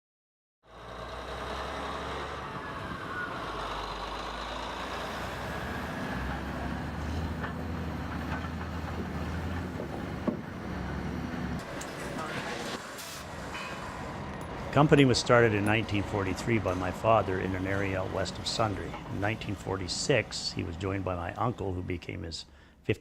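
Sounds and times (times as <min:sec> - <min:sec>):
heavy machinery humming: 0:00.7 - 0:22.4.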